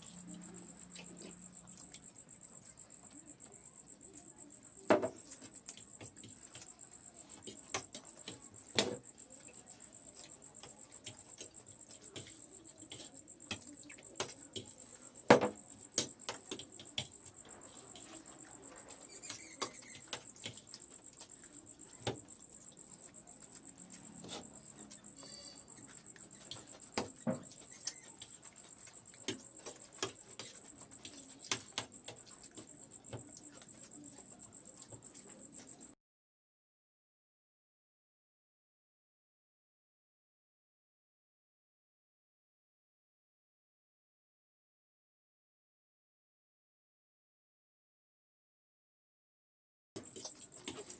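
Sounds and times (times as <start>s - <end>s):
crickets trilling: 0.0s - 36.0s, 50.0s - 50.9s
clicks and knocks of eating: 4.8s - 35.9s, 50.0s - 50.9s.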